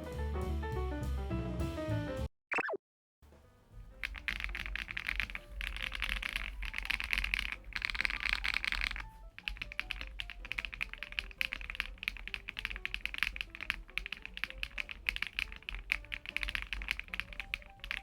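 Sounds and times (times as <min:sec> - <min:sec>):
soft background music: 0:03.3 - 0:18.0
mechanical keyboard typing: 0:04.0 - 0:18.0.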